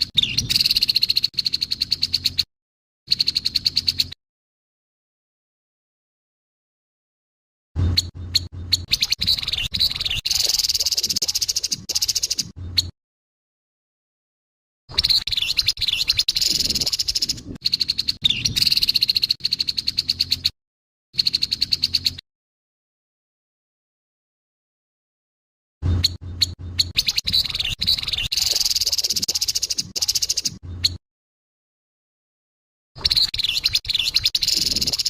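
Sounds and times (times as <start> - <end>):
bird harsh rattling calls: 0.0 - 2.5, 3.1 - 4.2, 8.0 - 12.9, 15.0 - 20.5, 21.2 - 22.2, 26.0 - 31.0, 33.0 - 35.0.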